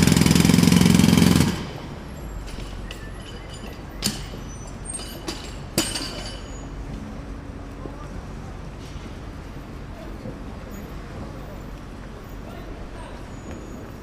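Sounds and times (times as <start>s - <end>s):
jackhammer hammering: 0.0s - 3.1s
low steady background noise: 1.0s - 14.0s.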